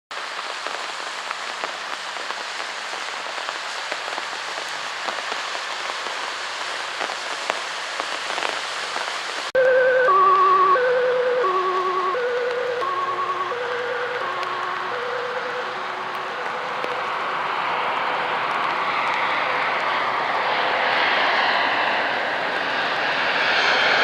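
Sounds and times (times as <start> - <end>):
rain drops ticking: 0.1 - 20.0
heavy rain falling: 0.1 - 22.8
music with held wavering notes: 9.6 - 17.3.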